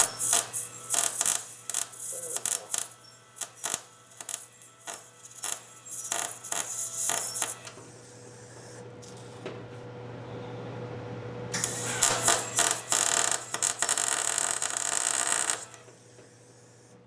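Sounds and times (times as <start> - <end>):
welding arc crackling: 0.0 - 7.7, 11.6 - 15.9.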